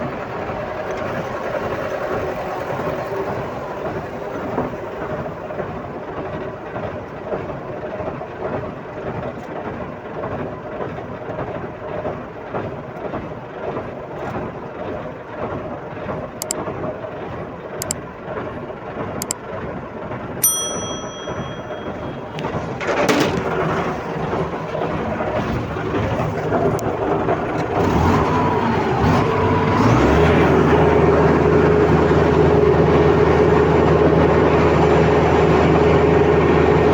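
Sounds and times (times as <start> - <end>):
diesel machinery engine: 0.0 - 36.9
short beep: 20.4 - 22.3.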